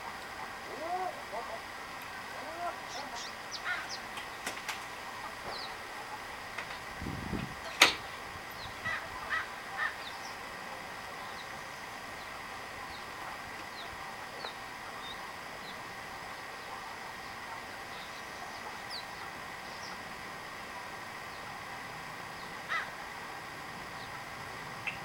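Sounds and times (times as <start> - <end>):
poultry calling: 0.0 - 4.5, 8.6 - 10.4, 22.4 - 23.0.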